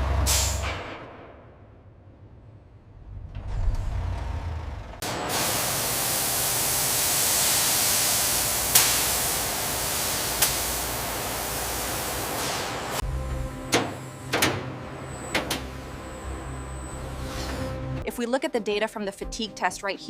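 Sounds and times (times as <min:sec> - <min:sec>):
low rumble: 0:01.0 - 0:05.0
loud steady hiss: 0:05.1 - 0:13.0.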